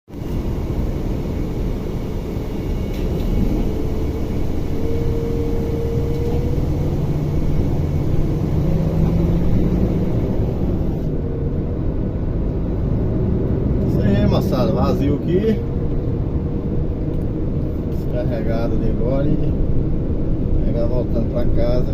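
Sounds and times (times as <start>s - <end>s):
truck diesel engine running: 0.1s - 13.9s.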